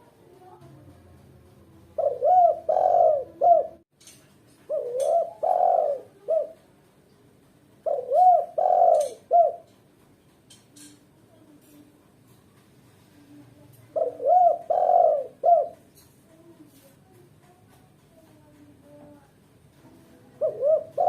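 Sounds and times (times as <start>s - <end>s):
dove cooing: 1.9s - 3.8s, 4.7s - 6.7s, 7.8s - 9.7s, 13.7s - 16.0s, 20.0s - 21.0s.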